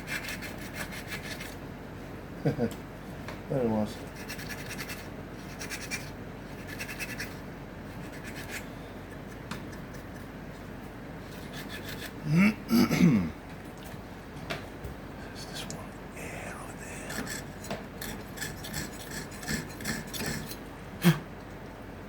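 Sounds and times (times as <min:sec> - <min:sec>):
comb scratching through beard: 0:04.0 - 0:07.4, 0:11.3 - 0:12.2
person humming: 0:12.2 - 0:13.4.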